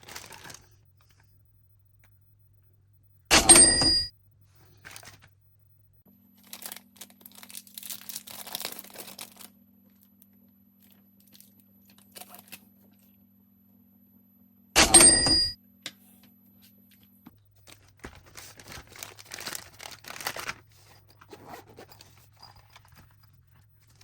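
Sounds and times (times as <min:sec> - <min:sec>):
packaging crinkling and tearing: 0:00.0 - 0:00.8, 0:04.8 - 0:05.3, 0:06.4 - 0:09.6, 0:10.8 - 0:12.7, 0:17.6 - 0:24.0
low steady hum: 0:00.0 - 0:24.0.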